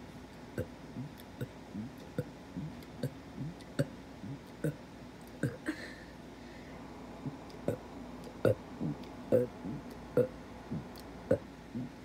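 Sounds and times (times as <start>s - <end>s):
person burping and gulping air: 0.6s - 4.8s, 5.4s - 5.8s, 8.4s - 12.0s.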